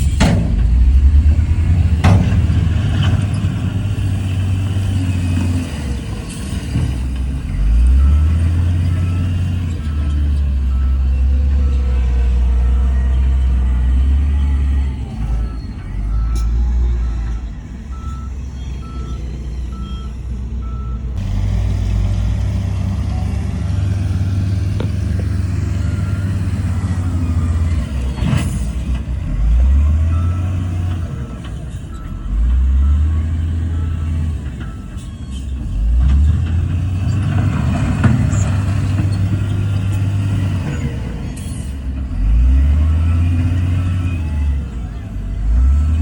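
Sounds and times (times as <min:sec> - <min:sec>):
diesel engine revving: 0:00.0 - 0:46.0
reversing alarm beeping: 0:07.5 - 0:21.2, 0:23.0 - 0:28.8, 0:29.4 - 0:35.9.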